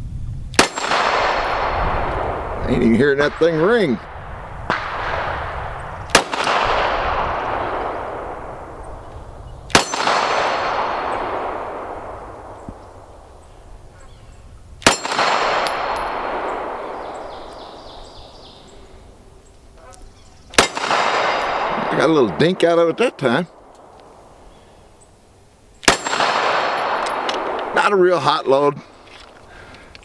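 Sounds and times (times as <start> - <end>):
pistol shots with echo: 0.6 - 13.4, 14.8 - 18.8, 20.5 - 24.5, 25.8 - 28.6.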